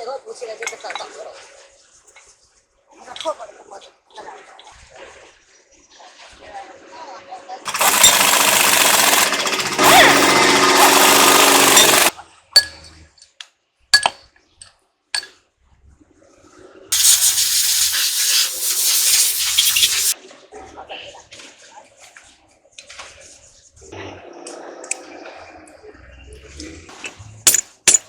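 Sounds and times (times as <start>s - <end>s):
power tool running: 7.7s - 12.1s, 17.0s - 20.2s
sharp clicks: 7.7s - 12.1s.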